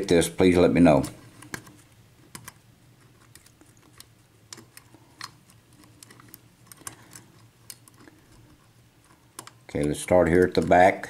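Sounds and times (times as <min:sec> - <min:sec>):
small metal clicks and taps: 0:09.0 - 0:10.8.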